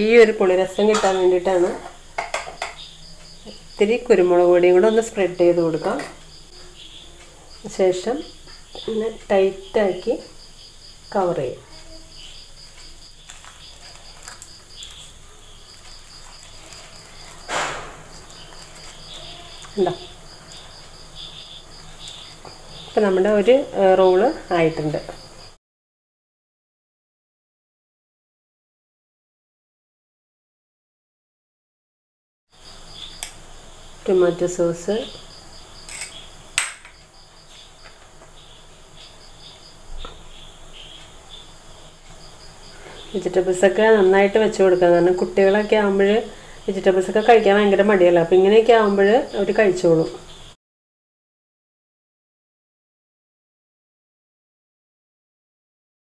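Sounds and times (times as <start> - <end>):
cricket chirping: 0.1 - 25.6, 32.6 - 50.6.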